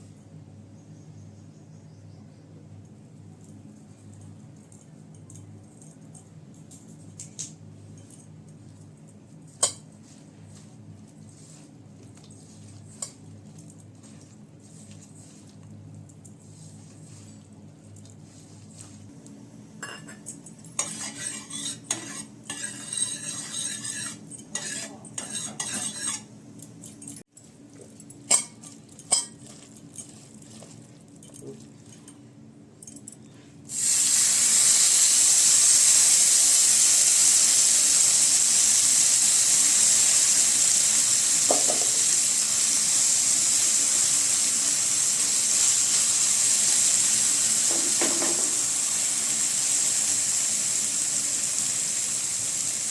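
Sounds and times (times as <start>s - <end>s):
utensil clinking against a dish: 19.8s - 32.2s
fish sizzling in hot oil: 33.7s - 52.9s.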